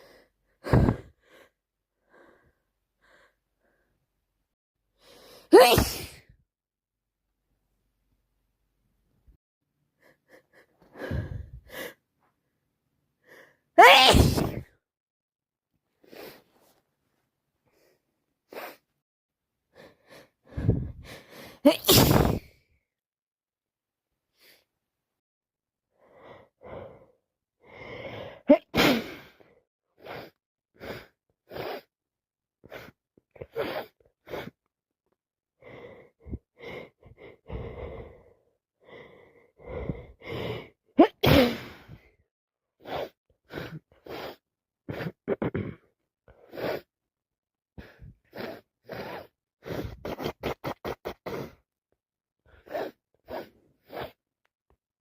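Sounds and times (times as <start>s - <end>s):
person sneezing: 5.5s - 6.2s, 13.8s - 14.6s, 21.6s - 22.5s, 28.5s - 29.3s, 41.0s - 42.0s.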